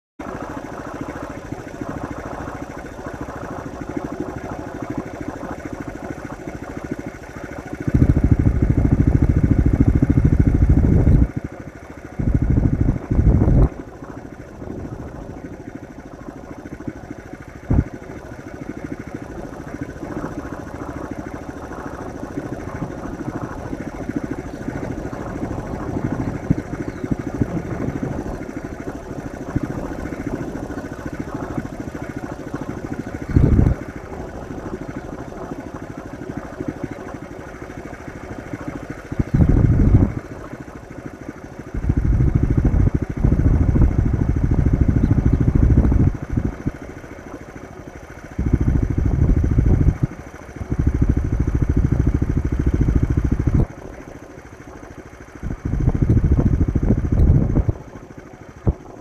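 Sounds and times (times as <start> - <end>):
small engine running: 0.2 - 59.0.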